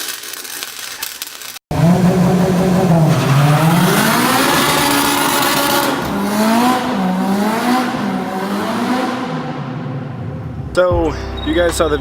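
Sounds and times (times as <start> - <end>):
car engine revving loud: 1.7 - 10.7.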